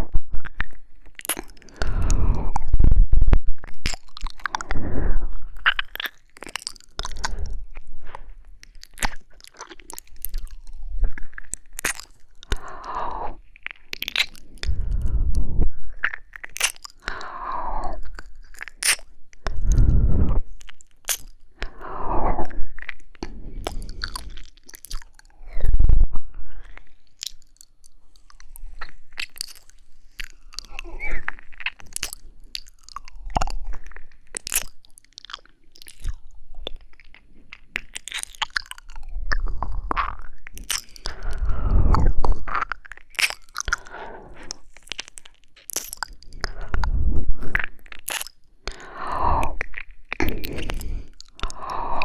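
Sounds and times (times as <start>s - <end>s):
sharp mouth clicks: 0.3s - 25.8s, 26.5s - 52.0s
wet licking and kissing: 3.6s - 4.7s, 5.5s - 15.0s, 16.0s - 17.4s, 18.0s - 19.5s, 20.6s - 21.8s, 22.8s - 25.3s, 27.1s - 41.4s, 42.2s - 52.0s
slow breaths at microphone: 14.4s - 16.0s, 19.4s - 20.6s, 40.8s - 42.2s, 43.7s - 44.8s, 46.2s - 47.6s.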